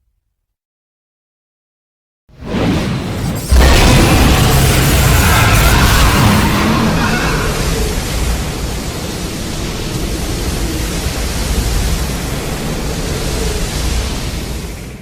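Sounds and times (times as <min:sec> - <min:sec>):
loud rushing noise: 0:02.3 - 0:15.0
deep rumble: 0:02.4 - 0:14.1.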